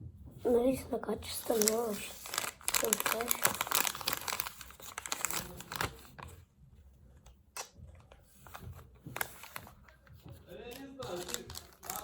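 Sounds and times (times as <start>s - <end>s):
plastic packets crinkling: 1.2s - 6.4s, 8.4s - 10.0s, 10.6s - 12.0s.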